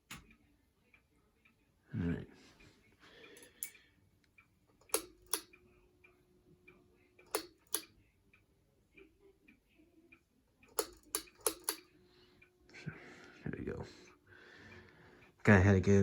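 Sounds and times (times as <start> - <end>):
ceiling fan switch clicks: 4.9 - 5.6, 7.3 - 7.9, 10.7 - 11.9.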